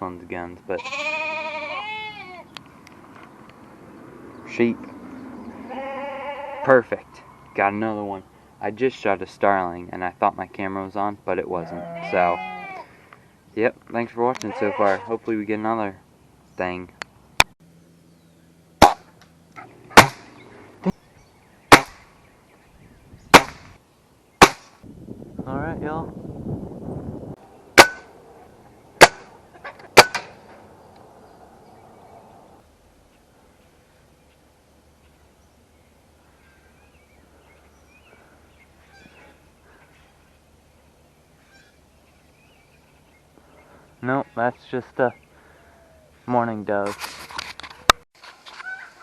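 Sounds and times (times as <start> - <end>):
small birds chirping: 2.4 - 5.8, 11.8 - 14.6, 15.3 - 18.7, 19.4 - 24.5, 30.6 - 46.6
pellet gun shots: 18.8 - 19.1, 19.9 - 20.4, 21.7 - 22.1, 23.3 - 23.7, 24.4 - 24.8, 27.8 - 28.1, 29.0 - 29.3, 30.0 - 30.4.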